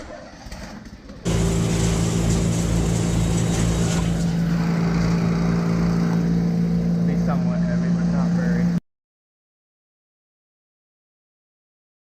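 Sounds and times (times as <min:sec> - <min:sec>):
machine engine running: 0:01.2 - 0:08.8.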